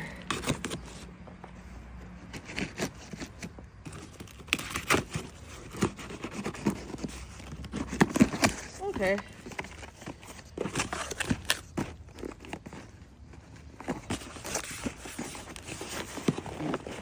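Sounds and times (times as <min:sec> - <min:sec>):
cardboard box being opened: 0:00.0 - 0:01.1, 0:01.8 - 0:17.0
packaging tearing: 0:02.4 - 0:13.0.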